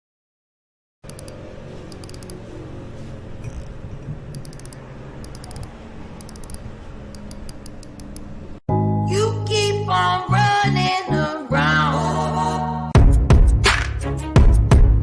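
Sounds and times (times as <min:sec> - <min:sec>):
mechanism clicking: 0:01.0 - 0:08.6.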